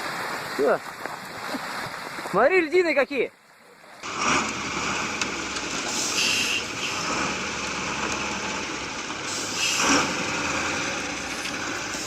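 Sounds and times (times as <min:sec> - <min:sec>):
vehicle engine running: 0:04.0 - 0:12.0.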